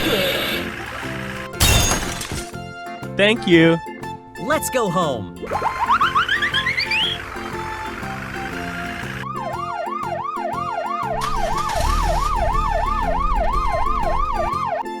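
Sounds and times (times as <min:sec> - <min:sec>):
police siren wailing: 0:00.0 - 0:01.3, 0:05.5 - 0:15.0
background music: 0:00.0 - 0:15.0.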